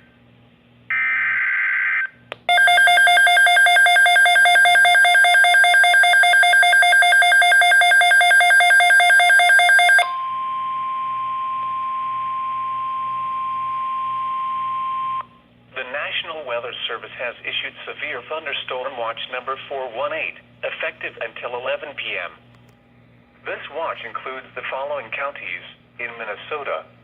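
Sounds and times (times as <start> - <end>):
steady single-pitch warning tone: 0.9 - 15.4
rapidly pulsing alarm beep: 2.5 - 10.7.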